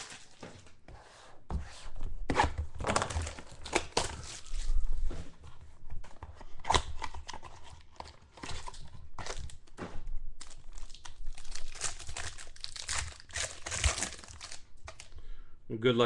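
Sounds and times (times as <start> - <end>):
card packaging crinkling: 0.0 - 0.8, 2.8 - 4.8, 10.4 - 15.2.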